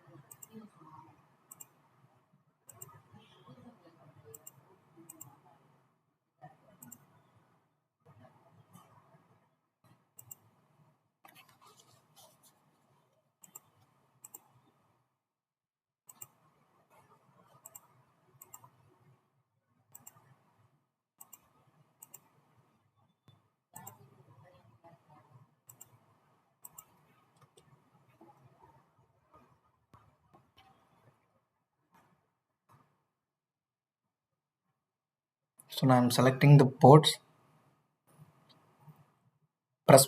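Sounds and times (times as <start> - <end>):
computer mouse clicks: 0.2 - 0.6, 1.5 - 1.9, 2.7 - 3.1, 4.3 - 5.8, 6.6 - 7.2, 9.9 - 12.6, 13.4 - 14.8, 16.1 - 19.2, 19.9 - 20.5, 21.2 - 22.6, 23.2 - 24.6, 25.2 - 31.2.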